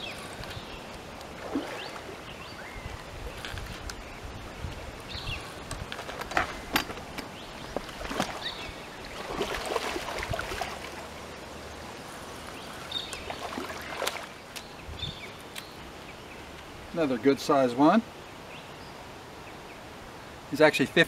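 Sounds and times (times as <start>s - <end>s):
water splashing: 1.2s - 2.4s, 7.7s - 11.2s, 13.2s - 14.4s.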